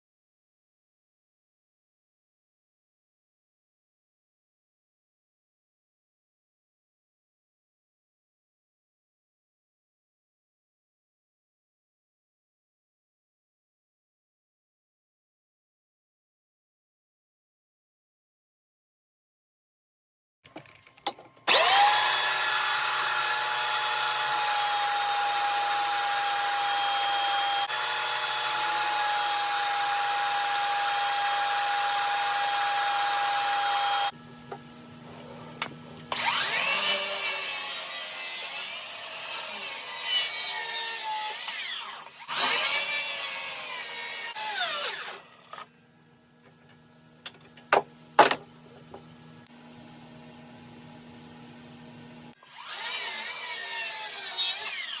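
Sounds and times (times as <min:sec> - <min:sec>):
power tool motor whining: 0:21.4 - 0:34.2, 0:35.0 - 0:45.7, 0:52.4 - 0:55.0.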